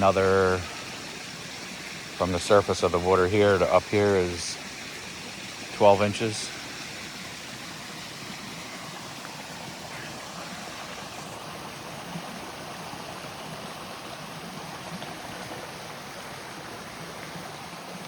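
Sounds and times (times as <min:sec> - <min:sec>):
creek rushing over rocks: 0:00.0 - 0:18.0.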